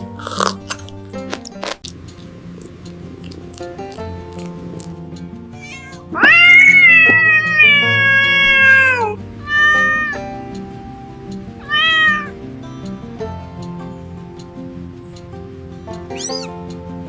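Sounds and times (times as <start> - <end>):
background music: 0.0 - 17.0
cat meowing: 5.6 - 10.3, 11.6 - 12.4, 16.1 - 16.5.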